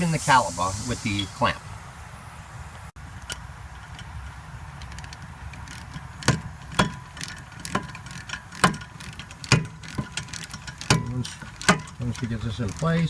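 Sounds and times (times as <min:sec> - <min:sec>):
hand tools clicking on metal: 0:03.1 - 0:13.0.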